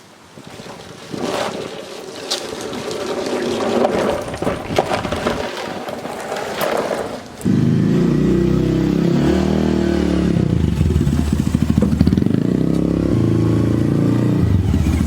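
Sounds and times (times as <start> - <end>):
rustling and scraping: 0.3 - 7.6
lawn mower engine running: 2.3 - 15.0.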